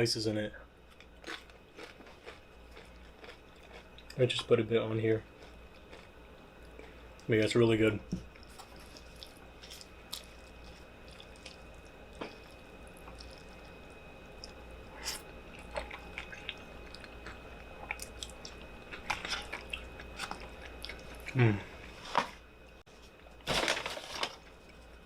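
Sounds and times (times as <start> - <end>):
person chewing food: 0.9 - 4.4, 5.4 - 7.2, 8.3 - 21.6.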